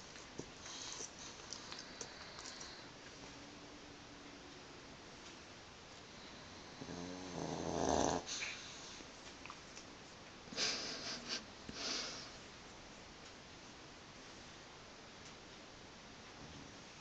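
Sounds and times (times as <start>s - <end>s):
dog snoring: 6.2s - 8.7s.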